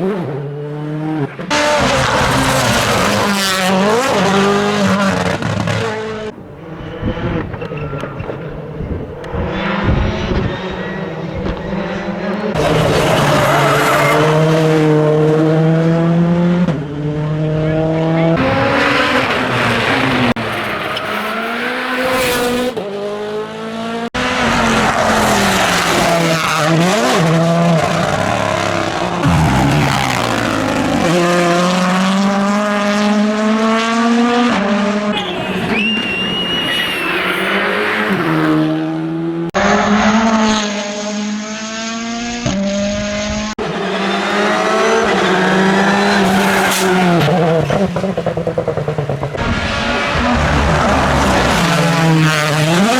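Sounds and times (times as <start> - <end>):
rally car engines revving: 0.0 - 52.9
high-pitched squeal: 6.6 - 14.7, 35.1 - 38.6, 43.6 - 47.8.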